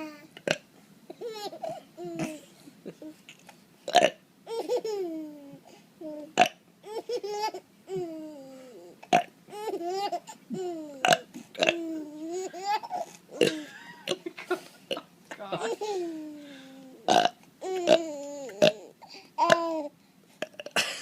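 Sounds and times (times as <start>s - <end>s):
man burping: 13.4s - 14.3s, 17.0s - 18.8s, 20.4s - 21.0s.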